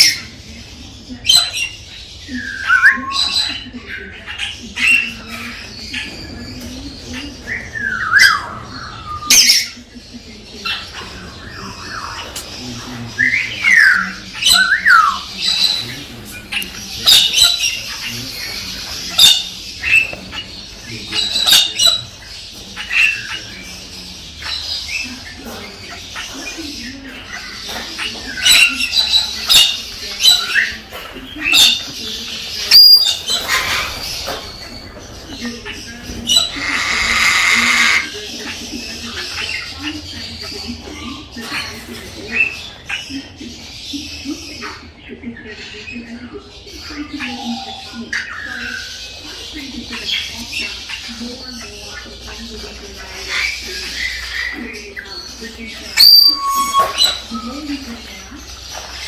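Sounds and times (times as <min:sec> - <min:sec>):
cockatoo squawking: 0:10.6 - 0:43.4, 0:46.7 - 0:59.0
cockatoo screech: 0:36.6 - 0:38.0, 0:56.0 - 0:57.3.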